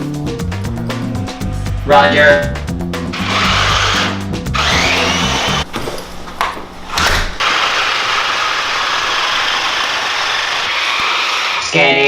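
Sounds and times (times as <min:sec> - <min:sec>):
background music: 0:00.0 - 0:05.6
drone propellers whirring: 0:03.1 - 0:05.6.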